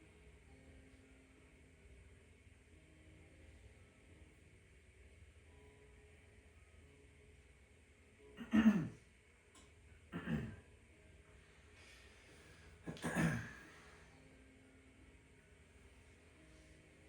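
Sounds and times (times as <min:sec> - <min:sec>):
person clearing throat: 0:08.4 - 0:09.0, 0:10.1 - 0:10.6, 0:12.9 - 0:13.7.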